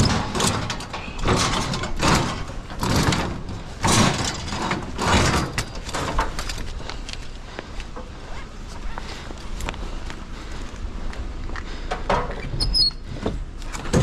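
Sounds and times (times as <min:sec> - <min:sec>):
scrap scraping and clattering: 0:00.0 - 0:07.2.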